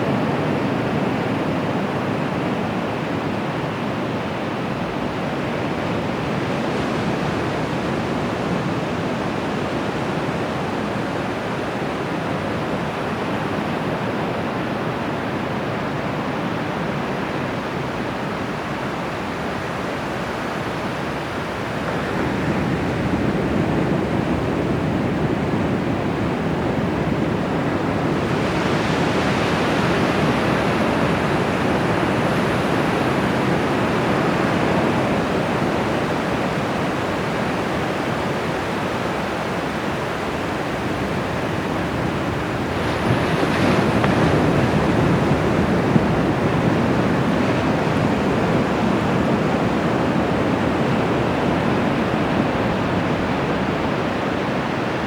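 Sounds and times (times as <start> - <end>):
surf breaking on beach: 27.7 - 53.9.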